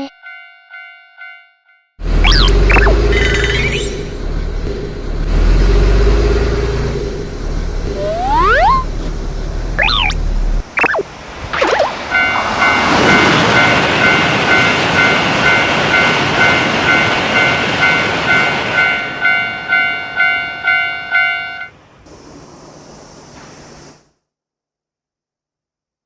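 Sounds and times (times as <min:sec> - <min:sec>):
train rushing past: 0:11.1 - 0:19.9
crossing warning bell clanging: 0:12.1 - 0:21.8
faint hiss: 0:22.1 - 0:24.1.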